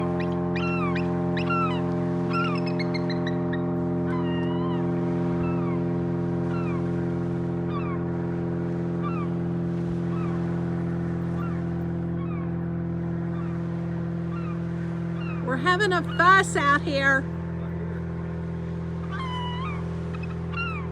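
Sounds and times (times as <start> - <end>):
low mechanical hum: 0.0 - 20.9
falling bird cries: 19.0 - 20.9.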